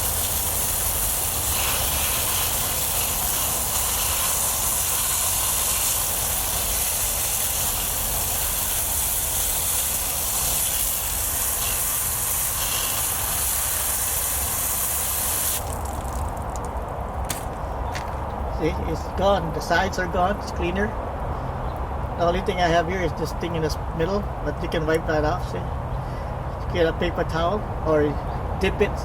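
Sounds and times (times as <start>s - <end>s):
garden hose spraying water: 0.0s - 16.9s.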